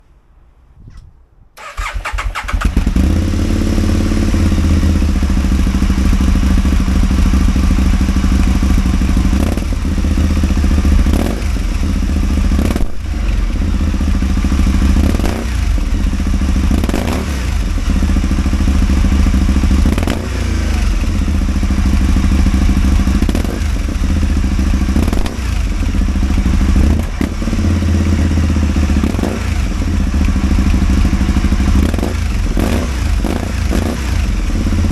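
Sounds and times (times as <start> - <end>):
misfiring motorcycle engine: 1.6 - 34.9.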